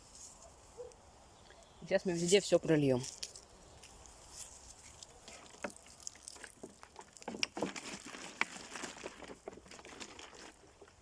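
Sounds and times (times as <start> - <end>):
water splashing on plants: 4.9 - 9.7.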